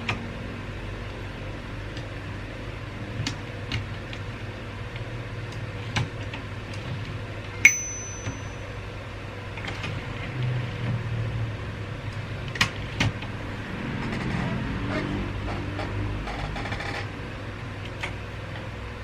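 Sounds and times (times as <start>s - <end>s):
typewriter bell ding: 7.7s - 8.7s.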